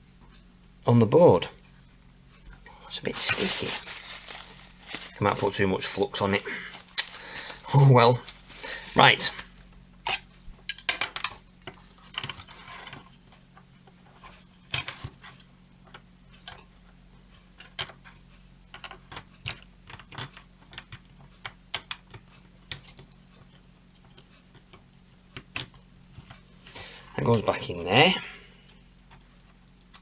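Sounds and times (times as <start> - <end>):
small parts and tools clattering: 3.1 - 11.4.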